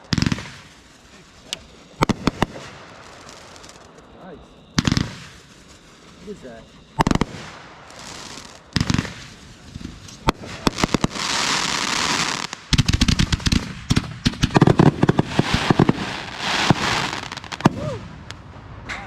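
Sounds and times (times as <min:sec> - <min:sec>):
fireworks crackling hiss: 0:00.0 - 0:18.8
fireworks bangs: 0:00.0 - 0:19.0.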